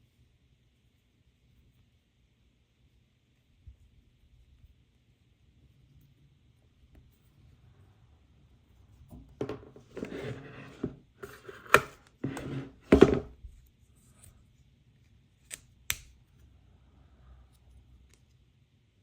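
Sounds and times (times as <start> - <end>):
packaging rustling and scraping: 9.4 - 13.3
sharp snaps: 15.5 - 16.2.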